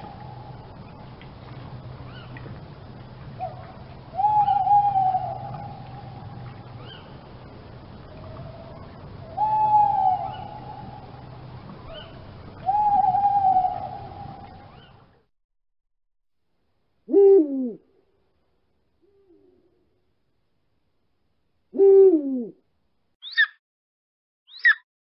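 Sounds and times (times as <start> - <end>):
long whistled bird calls: 3.4 - 7.2, 8.4 - 15.0, 23.2 - 23.6, 24.5 - 24.8.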